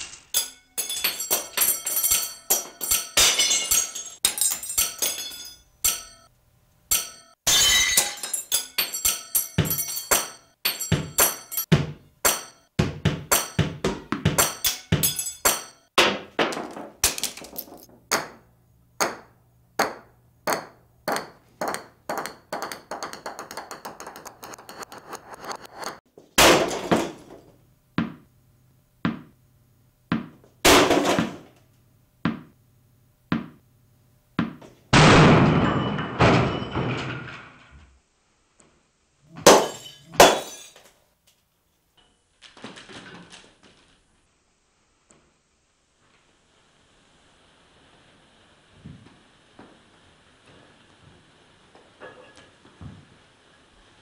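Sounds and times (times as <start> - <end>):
knocks and thuds: 11.0 - 12.0, 12.8 - 15.2.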